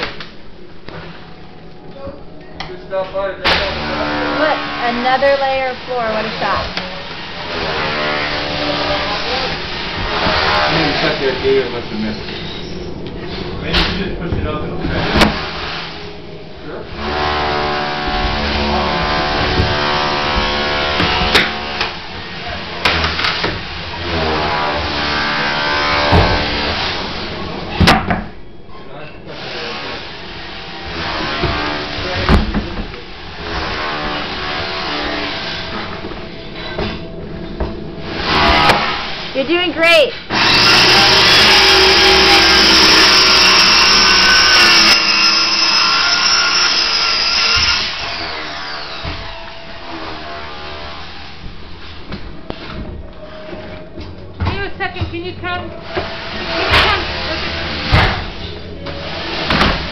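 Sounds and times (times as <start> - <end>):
power tool cutting flooring: 3.5 - 12.1, 13.7 - 16.1, 16.9 - 28.0, 29.3 - 37.0, 38.0 - 39.4, 40.3 - 52.8, 55.8 - 59.9.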